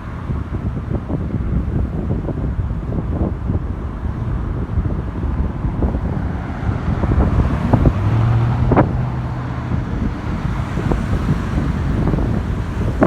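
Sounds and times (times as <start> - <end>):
road traffic: 0.0 - 13.0
vehicle engine humming: 0.0 - 13.0
wind buffeting microphone: 0.0 - 13.0.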